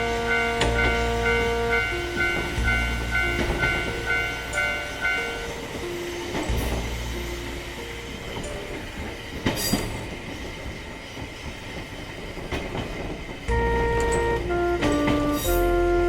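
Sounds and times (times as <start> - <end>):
music: 0.0 - 9.4, 13.5 - 16.0
train rumbling on rails: 0.0 - 16.0
sharp wheel clacks: 8.4 - 10.4.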